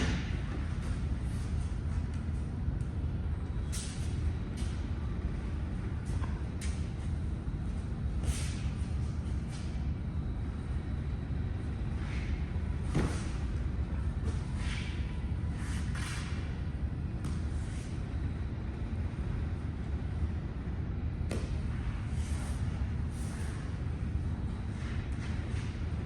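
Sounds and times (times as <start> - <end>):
thump on mat: 21.3 - 21.6.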